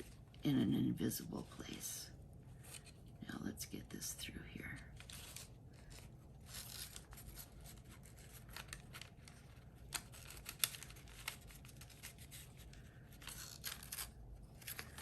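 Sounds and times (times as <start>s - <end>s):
paper and ribbon rustling: 4.7s - 15.0s.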